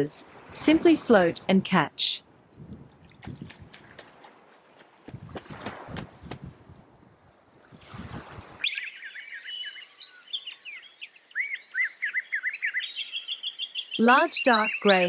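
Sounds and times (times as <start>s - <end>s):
small birds chirping: 8.6s - 15.0s.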